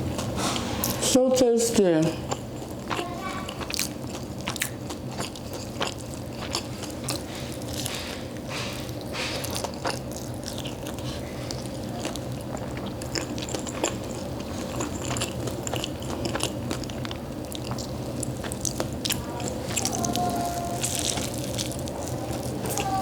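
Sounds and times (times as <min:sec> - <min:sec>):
person chewing crunchy food: 0:00.0 - 0:01.0, 0:02.1 - 0:23.0
crispy cracker crunching: 0:02.3 - 0:23.0.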